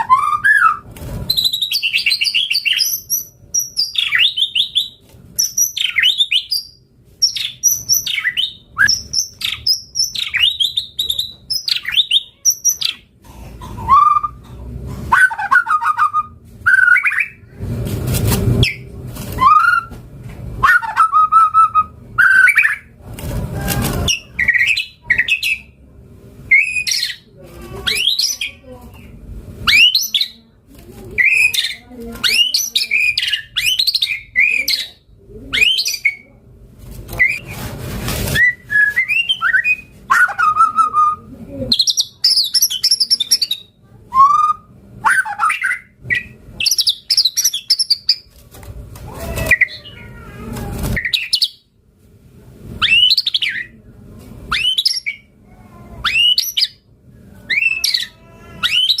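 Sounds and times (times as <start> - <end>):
bird singing whistled song: 0.1 - 13.0.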